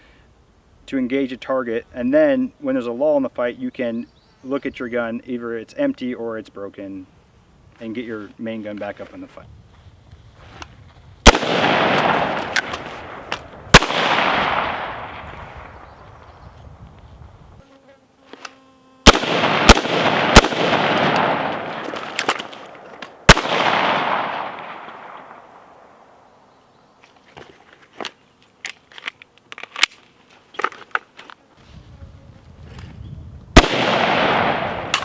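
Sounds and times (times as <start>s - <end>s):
gunshots echoing: 11.2s - 15.9s, 19.1s - 26.0s, 33.6s - 35.0s.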